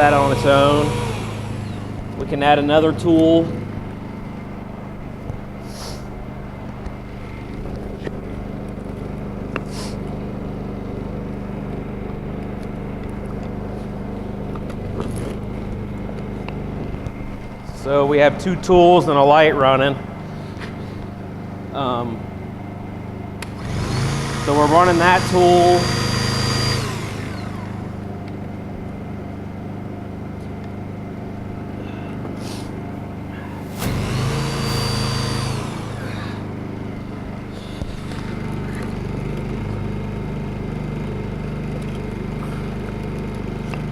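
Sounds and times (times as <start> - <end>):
electric motor whine winding down: 0.0 - 4.6, 23.4 - 28.6, 33.3 - 40.5
generator engine humming: 0.0 - 43.9.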